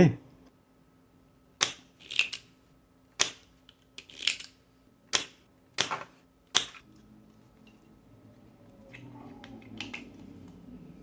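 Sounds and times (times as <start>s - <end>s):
hand tools clicking and snapping: 3.2s - 6.8s.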